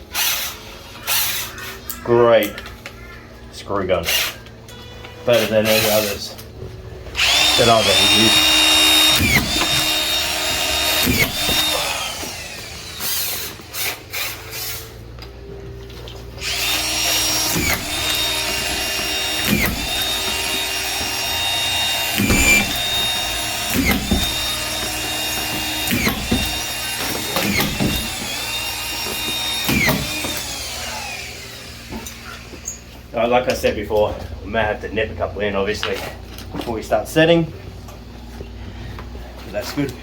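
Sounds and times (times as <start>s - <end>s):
screw gun driving screws: 4.0s - 4.4s, 7.2s - 15.0s, 16.4s - 32.8s.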